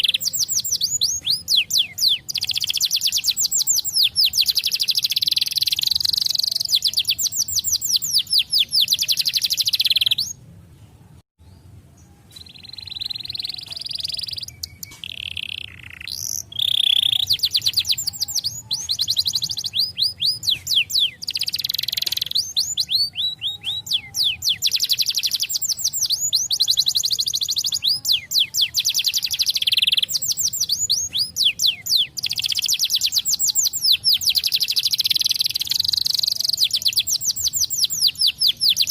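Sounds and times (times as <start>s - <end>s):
canary singing trills: 0.0s - 10.4s, 12.0s - 38.9s.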